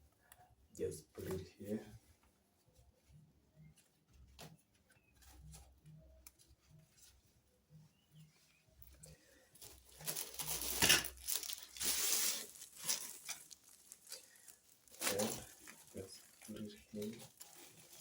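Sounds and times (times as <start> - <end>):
plastic packaging crinkling: 8.9 - 18.0.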